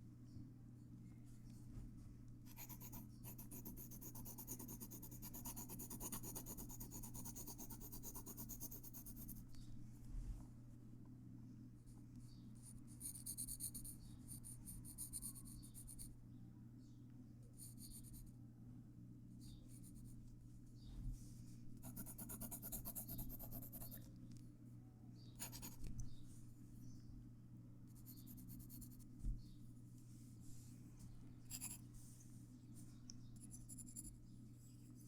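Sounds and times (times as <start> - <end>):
faint low hum: 0.0 - 35.0
pencil scratching on paper: 2.5 - 9.4, 21.8 - 24.0, 25.4 - 25.8, 28.0 - 29.0, 31.5 - 31.8.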